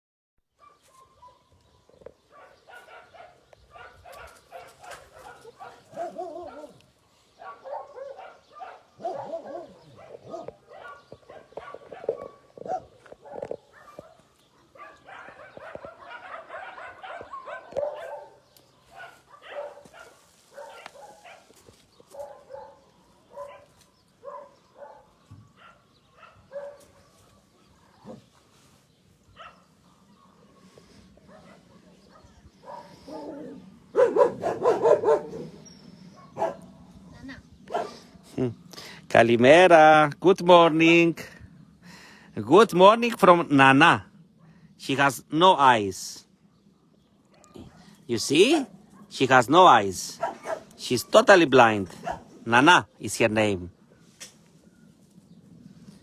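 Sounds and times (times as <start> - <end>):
many dogs barking and yipping: 0.6 - 28.5, 29.2 - 38.3, 47.3 - 52.7.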